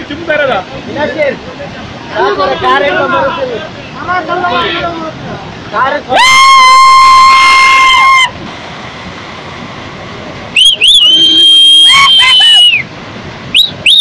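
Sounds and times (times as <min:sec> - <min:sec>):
floodwater rushing: 0:00.0 - 0:14.0
loud high whistle: 0:10.6 - 0:12.9, 0:13.5 - 0:14.0.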